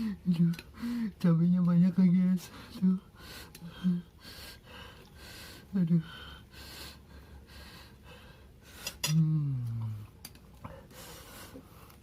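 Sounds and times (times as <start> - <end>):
man breathing: 0.0 - 1.2, 2.4 - 9.0, 10.6 - 12.0.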